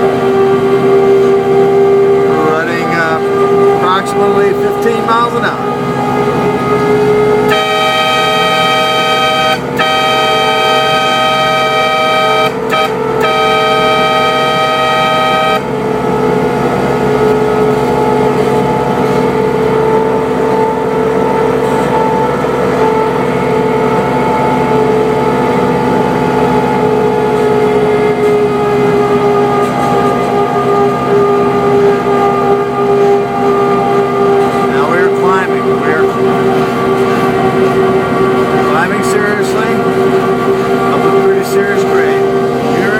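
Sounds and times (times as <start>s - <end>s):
diesel locomotive engine: 0.0s - 42.9s
locomotive horn blasts: 0.0s - 42.9s.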